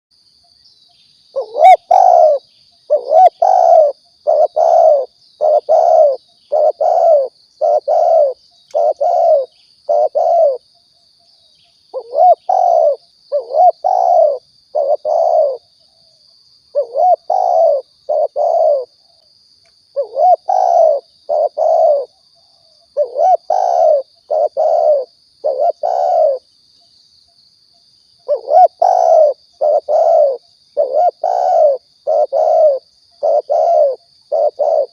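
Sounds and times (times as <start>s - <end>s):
dove cooing: 1.3s - 10.6s, 12.0s - 15.7s, 16.7s - 19.0s, 19.9s - 22.2s, 22.9s - 26.4s, 28.2s - 34.9s.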